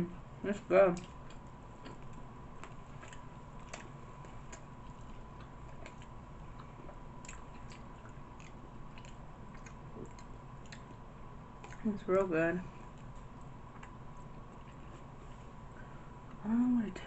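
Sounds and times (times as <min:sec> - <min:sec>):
wet chewing mouth clicks: 0:01.0 - 0:11.0, 0:11.6 - 0:11.9, 0:12.8 - 0:15.0.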